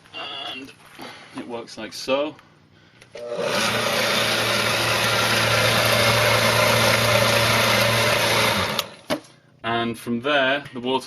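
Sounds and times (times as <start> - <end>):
electric water pump humming: 3.2 - 9.1.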